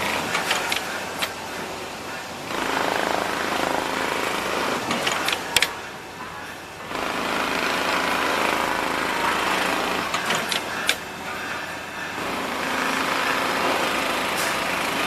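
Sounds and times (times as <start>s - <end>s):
sharp clicks: 0.0s - 6.0s, 6.8s - 15.0s
sewing machine stitching rattle: 0.0s - 11.1s.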